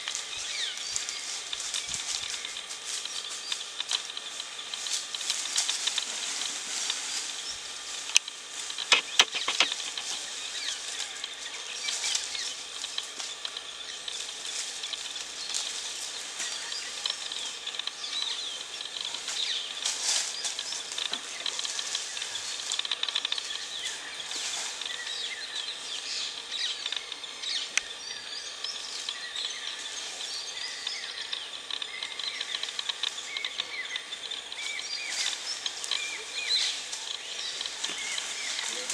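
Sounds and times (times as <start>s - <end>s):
small birds chirping: 0.0s - 38.9s
steady high hiss: 0.0s - 38.9s
sharp clicks or rustles: 8.1s - 10.2s.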